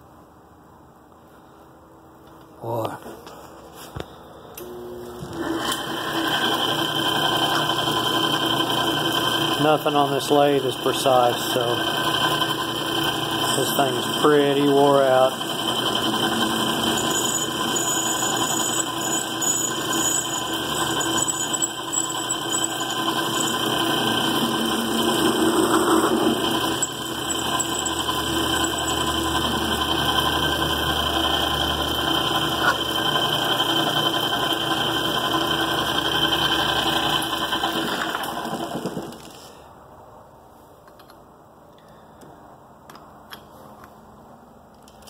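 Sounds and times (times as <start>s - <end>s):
metal lathe running: 4.6s - 38.8s.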